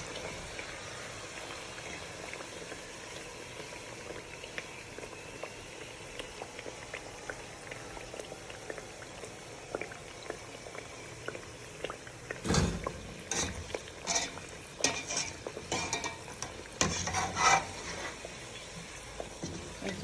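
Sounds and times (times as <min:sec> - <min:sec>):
pancakes frying in hot oil: 0:00.0 - 0:20.0
utensil clattering and scraping: 0:13.3 - 0:18.3.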